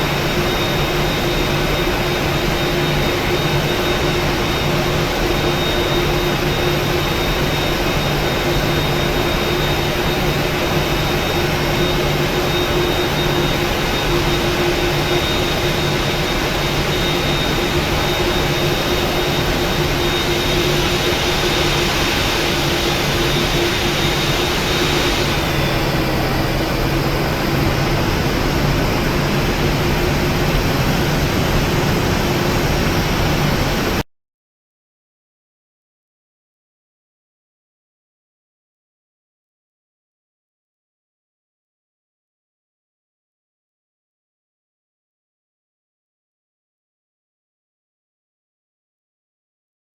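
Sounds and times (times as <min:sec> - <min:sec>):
jet engines heard from cabin: 0:00.0 - 0:34.0.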